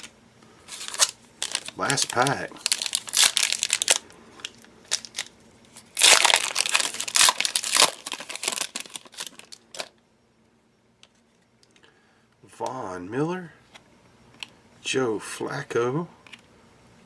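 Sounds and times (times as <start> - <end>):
cards rustling and clicking: 0.7 - 9.9
wrapper crinkling and tearing: 0.7 - 9.9.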